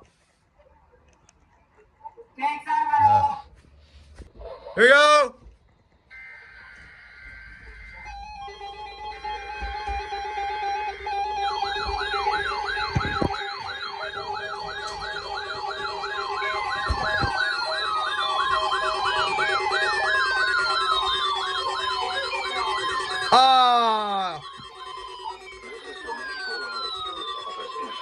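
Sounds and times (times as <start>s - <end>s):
swooping warble alarm: 6.0s - 28.0s
steady alert tone: 6.1s - 28.0s
steady beeping tones: 6.1s - 28.0s
wavering high tone: 6.1s - 28.0s.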